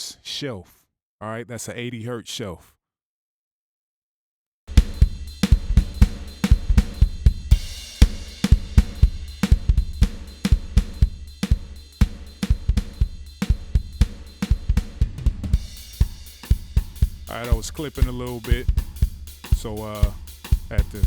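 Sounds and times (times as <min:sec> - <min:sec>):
drum kit groove: 0:04.7 - 0:21.0.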